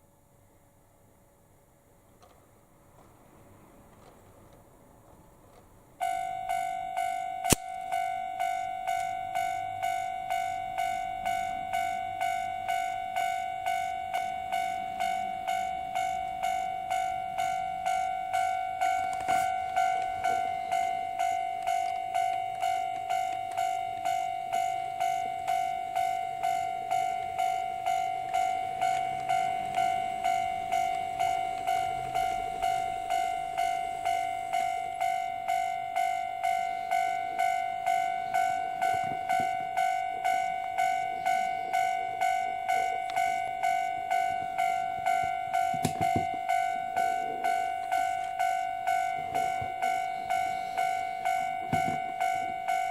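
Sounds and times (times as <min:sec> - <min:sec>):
electronic level crossing bell: 0:06.0 - 0:52.9
sharp click: 0:07.5 - 0:07.8.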